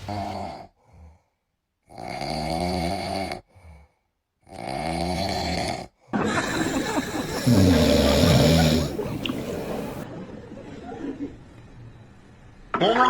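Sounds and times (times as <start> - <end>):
person snoring: 1.9 - 10.0.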